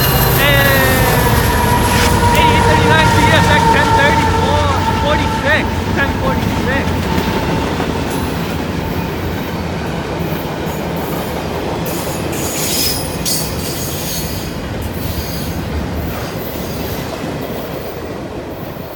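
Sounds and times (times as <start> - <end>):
high-pitched wheel squeal: 0.0 - 5.8
freight train wheel rumble: 0.0 - 18.9.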